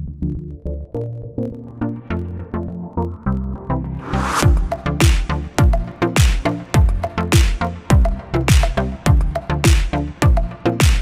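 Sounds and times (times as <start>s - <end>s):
rising swish: 3.9s - 4.8s
electronic dance music: 4.0s - 11.0s
heavy kick-drum hits: 4.4s - 11.0s.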